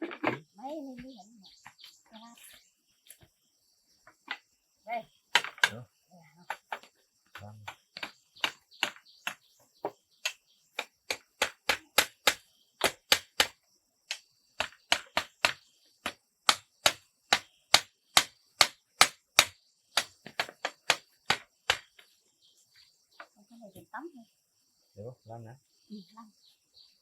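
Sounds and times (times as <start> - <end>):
hand tool striking wood: 5.3 - 5.8, 6.5 - 22.1.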